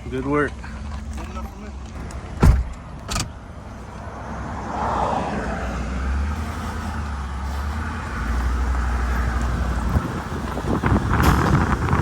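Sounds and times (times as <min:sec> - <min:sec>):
truck engine droning: 0:05.4 - 0:12.0.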